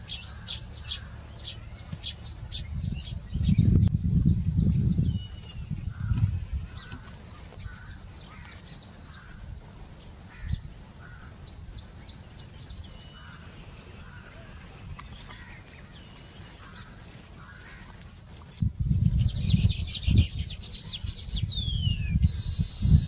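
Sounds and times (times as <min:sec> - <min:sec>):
birds chattering: 0:00.0 - 0:23.0.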